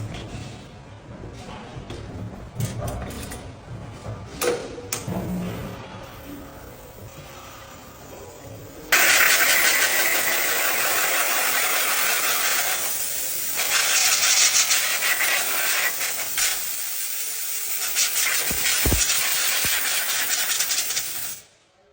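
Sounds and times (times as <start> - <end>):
loud hissing: 15.0 - 21.4.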